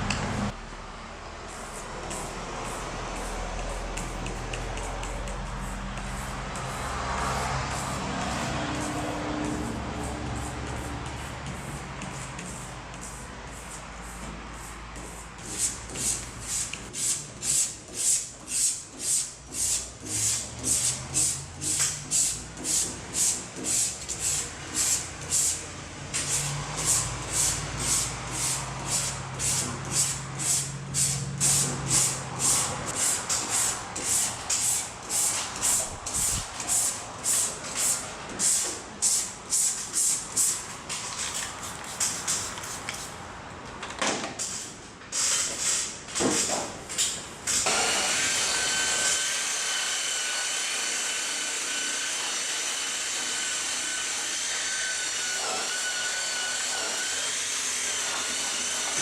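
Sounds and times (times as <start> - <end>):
hand rubbing sheet metal: 1.5 - 43.2.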